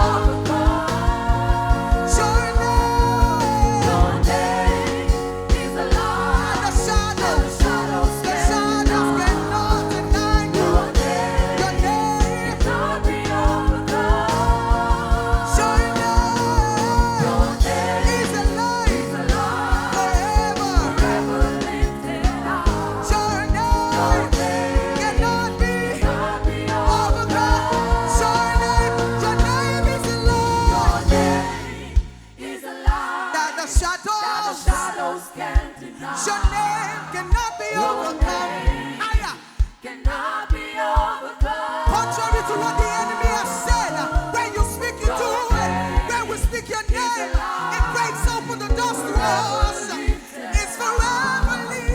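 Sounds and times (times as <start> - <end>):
band playing chords: 0.0 - 32.3
steady drum beat: 0.0 - 34.0, 35.6 - 51.9.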